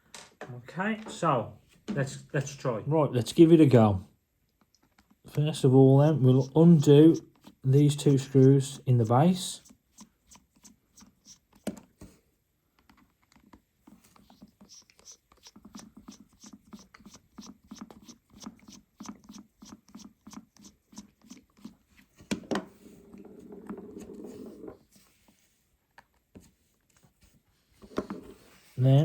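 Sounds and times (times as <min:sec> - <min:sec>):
low rasp: 0:06.0 - 0:11.5.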